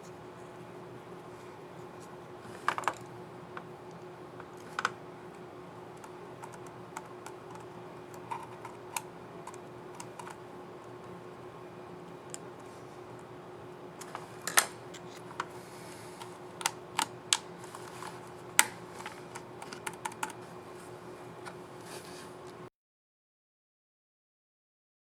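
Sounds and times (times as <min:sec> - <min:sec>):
laptop keyboard keys clicking: 0:16.6 - 0:20.4.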